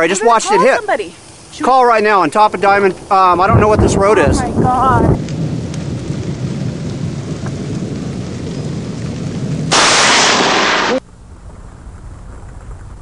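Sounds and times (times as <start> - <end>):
thunder rumbling low: 1.2 - 13.0
loud crack of thunder: 2.1 - 11.0.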